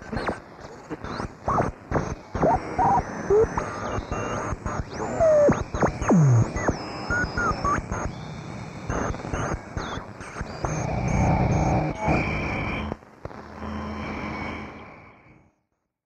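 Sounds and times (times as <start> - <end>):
crackling radio static: 0.0 - 13.9
radio tuning whistles: 1.0 - 8.2, 8.9 - 13.0
radio station snatches: 2.4 - 4.3, 5.0 - 6.7.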